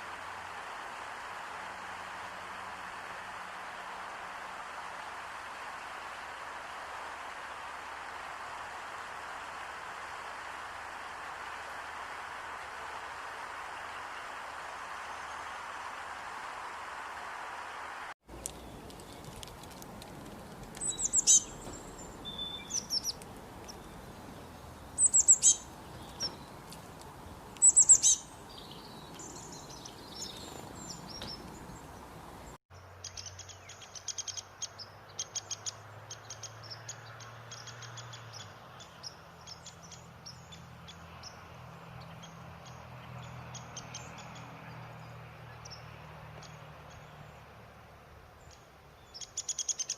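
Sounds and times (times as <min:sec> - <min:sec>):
birds chirping: 0:18.3 - 0:47.5.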